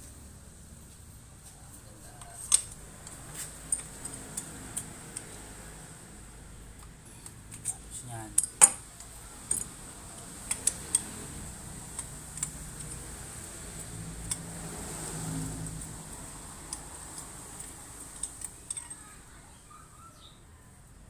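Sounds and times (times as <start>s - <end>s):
metallic clicks of hand tools: 2.2s - 5.4s, 8.4s - 14.7s, 16.6s - 19.0s.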